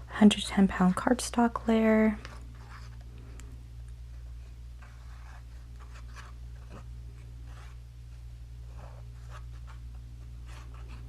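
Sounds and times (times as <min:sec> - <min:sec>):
low electrical hum: 0:00.0 - 0:11.0
cardstock scraping and rustling: 0:04.8 - 0:07.8.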